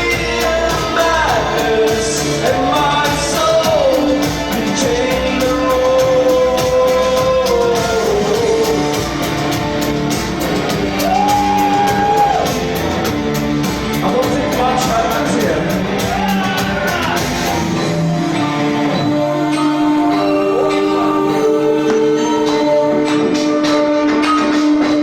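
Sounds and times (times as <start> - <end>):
person singing long notes: 0.0 - 9.3, 18.0 - 25.0
live band music: 0.0 - 25.0.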